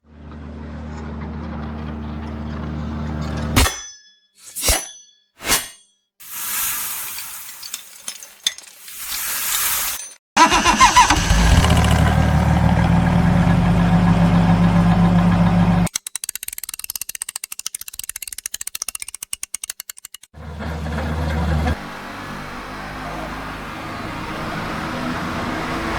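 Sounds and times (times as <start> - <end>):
engine cranking and running: 9.9 - 25.9
fast run of clicks: 15.9 - 20.3.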